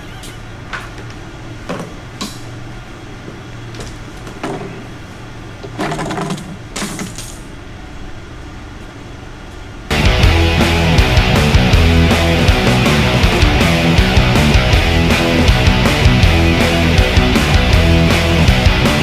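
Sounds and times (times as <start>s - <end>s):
steady low hum: 0.0s - 19.0s
tools and parts knocking: 3.8s - 4.9s, 5.6s - 7.5s
loud rock music: 9.9s - 19.0s.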